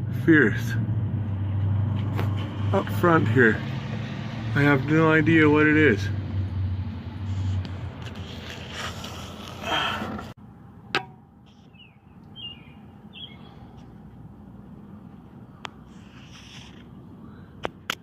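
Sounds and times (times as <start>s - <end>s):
bird chirps: 11.5s - 13.7s.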